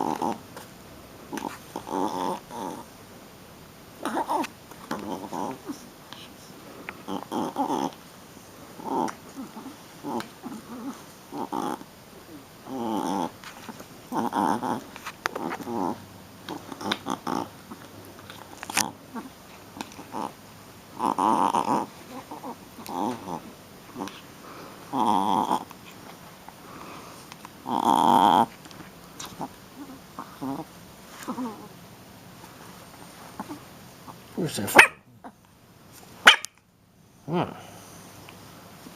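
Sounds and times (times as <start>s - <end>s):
puppy growling and grunting: 0.0s - 0.5s, 1.3s - 2.9s, 4.0s - 6.0s, 6.9s - 8.0s, 8.6s - 26.9s, 27.6s - 28.6s, 29.2s - 31.8s, 33.0s - 35.4s, 37.2s - 37.8s.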